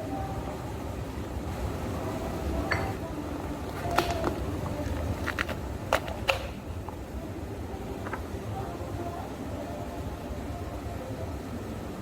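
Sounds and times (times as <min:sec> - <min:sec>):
low background hum: 0:00.0 - 0:12.0
glassware and utensils clinking: 0:02.6 - 0:03.0.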